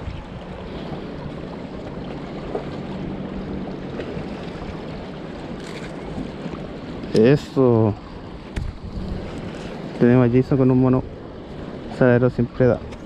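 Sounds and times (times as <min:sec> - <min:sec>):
wind on microphone: 0:00.0 - 0:07.2, 0:07.8 - 0:13.0
steady low hum: 0:00.0 - 0:13.0
surf on rocky shore: 0:00.0 - 0:13.0.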